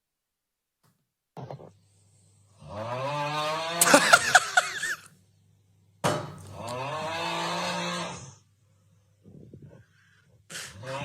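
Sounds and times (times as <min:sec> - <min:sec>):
man snoring loudly: 0:02.6 - 0:05.0, 0:06.5 - 0:08.4, 0:10.5 - 0:11.0.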